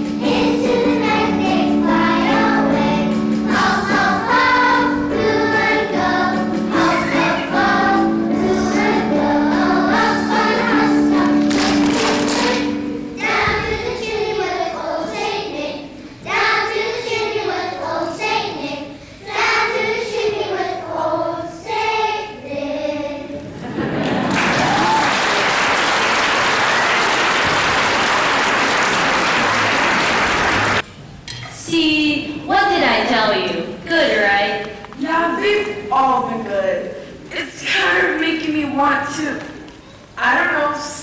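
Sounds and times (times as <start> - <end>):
children's choir singing: 0.0 - 24.6, 25.6 - 30.8
audience applauding: 11.2 - 12.7, 23.7 - 30.8.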